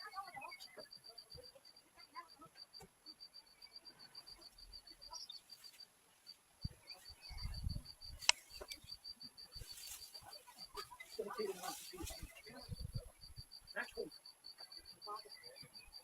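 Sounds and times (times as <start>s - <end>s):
insect chirping: 0.0s - 16.0s
sharp click: 8.2s - 8.8s.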